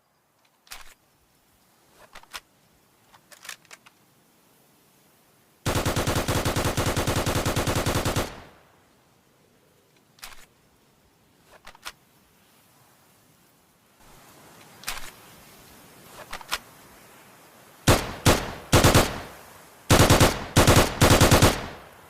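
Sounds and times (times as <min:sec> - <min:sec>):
faint clicks: 0:00.3 - 0:01.0, 0:01.6 - 0:04.1, 0:09.8 - 0:10.6, 0:11.4 - 0:12.2, 0:14.4 - 0:17.1
submachine gun full-auto burst: 0:05.7 - 0:08.5, 0:17.9 - 0:21.8.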